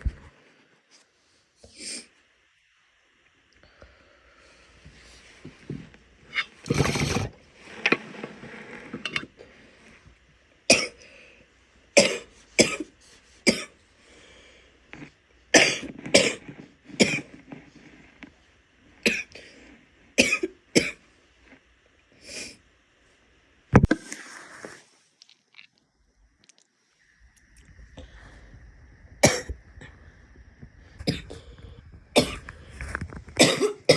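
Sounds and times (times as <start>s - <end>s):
woman coughing wetly: 10.7s - 11.0s, 12.0s - 12.9s, 15.6s - 16.4s, 20.2s - 21.0s, 33.4s - 33.9s.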